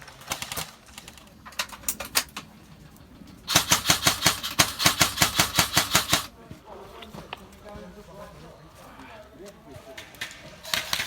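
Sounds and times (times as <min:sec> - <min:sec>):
airsoft guns firing: 0:00.0 - 0:02.4, 0:03.5 - 0:06.3, 0:10.0 - 0:11.0.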